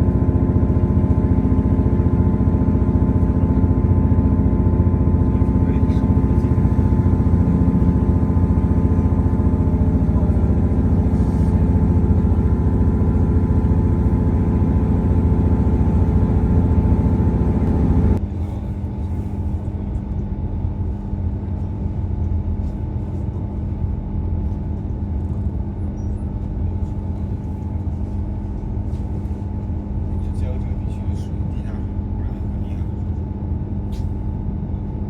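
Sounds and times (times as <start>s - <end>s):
train engine humming: 0.0s - 35.0s.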